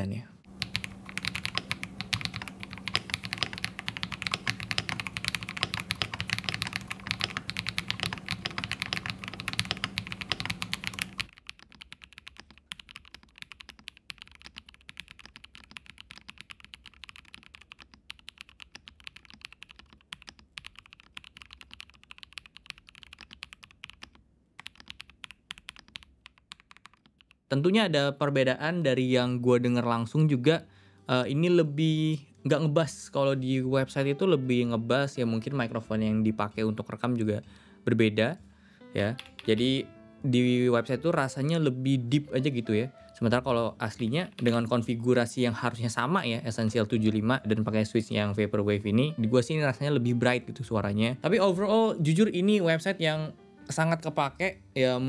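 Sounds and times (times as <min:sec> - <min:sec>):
keyboard key clacks: 0:00.6 - 0:27.3.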